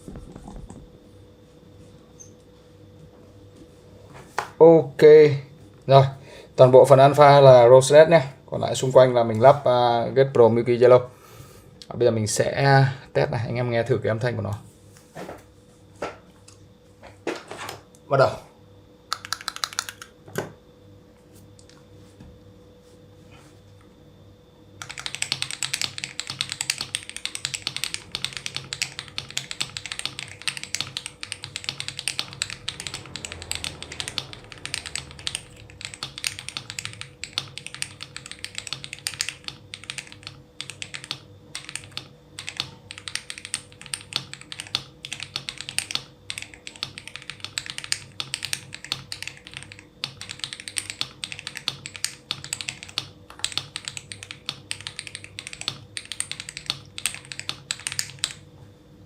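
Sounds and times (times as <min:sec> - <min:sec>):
fast typing on mechanical keyboard: 0:19.1 - 0:20.1, 0:24.8 - 0:58.4.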